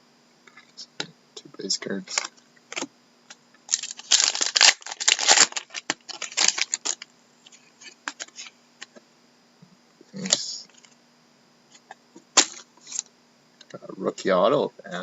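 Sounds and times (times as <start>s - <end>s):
trading cards rustling and sliding: 3.7s - 8.6s.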